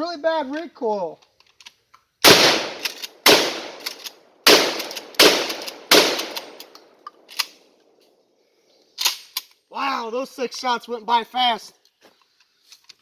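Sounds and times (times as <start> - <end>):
shotgun shots: 2.2 - 6.7.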